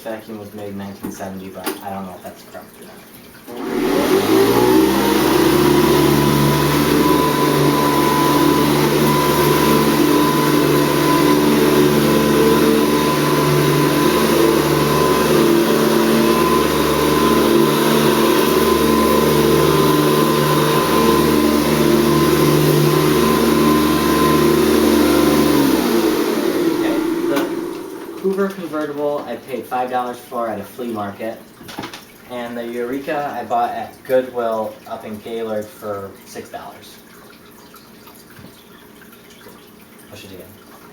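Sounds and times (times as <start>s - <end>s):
vacuum cleaner motor running: 3.5s - 29.4s.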